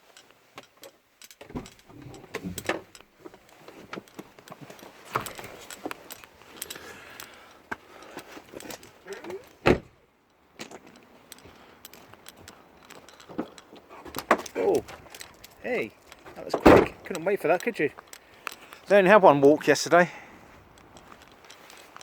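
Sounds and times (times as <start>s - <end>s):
clicks and rustles: 0.0s - 19.1s, 20.6s - 22.0s
keys jangling: 1.2s - 9.6s, 10.6s - 18.8s.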